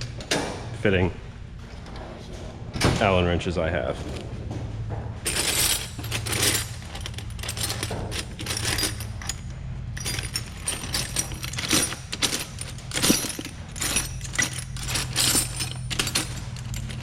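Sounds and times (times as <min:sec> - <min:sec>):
steady low hum: 0:00.0 - 0:17.0
metal tools clinking and rattling: 0:05.2 - 0:17.0.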